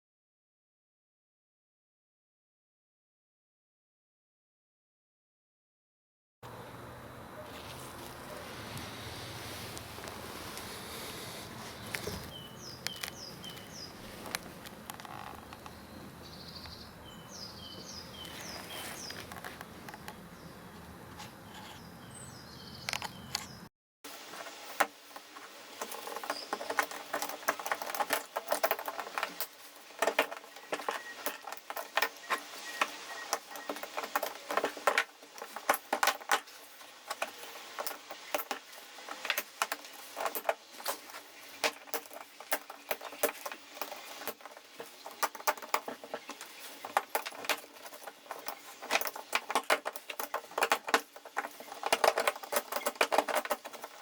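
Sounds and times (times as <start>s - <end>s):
hard objects clicking and clattering: 24.1s - 54.0s.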